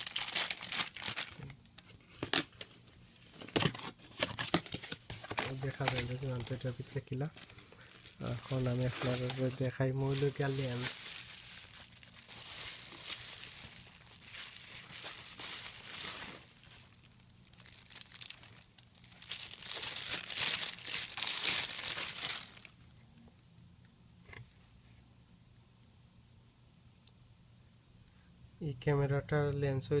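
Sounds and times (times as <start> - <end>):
packaging crinkling and rustling: 0.0 - 22.8.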